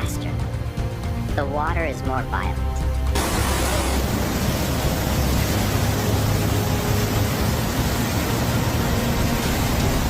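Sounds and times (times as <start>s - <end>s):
loud rushing water: 3.0s - 10.0s.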